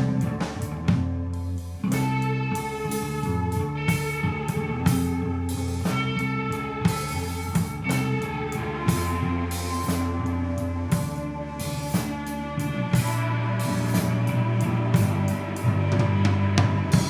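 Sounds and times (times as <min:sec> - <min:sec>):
bass guitar: 0:00.0 - 0:17.0
drum kit beat: 0:00.0 - 0:17.0
electric guitar: 0:00.0 - 0:17.0.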